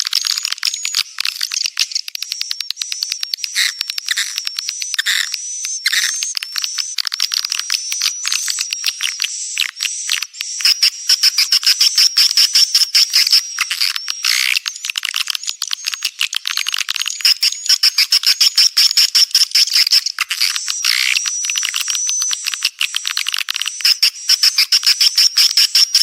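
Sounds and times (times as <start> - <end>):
swiftlet high chirps and clicks: 1.8 - 16.2.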